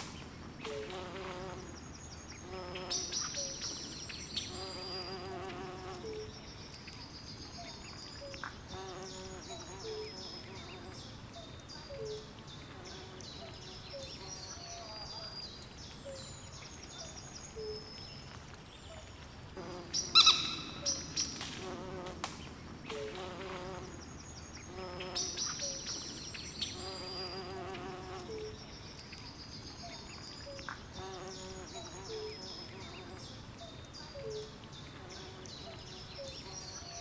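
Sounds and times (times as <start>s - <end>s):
high insect calls: 19.6s - 22.2s.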